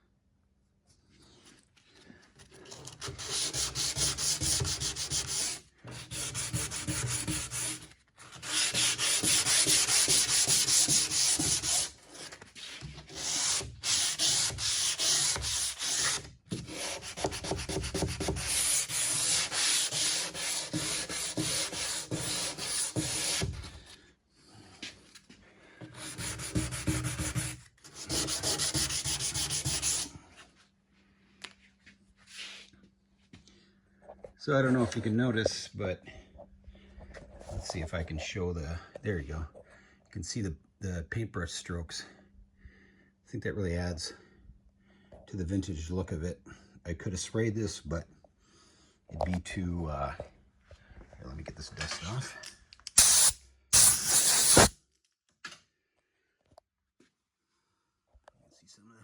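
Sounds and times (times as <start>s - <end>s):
hand sanding wood: 3.0s - 23.7s, 26.0s - 30.1s, 53.0s - 54.7s.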